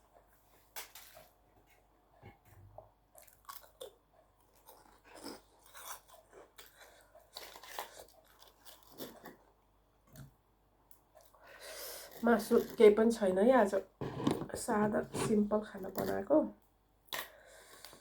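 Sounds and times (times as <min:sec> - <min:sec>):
person chewing food: 0:03.1 - 0:12.8.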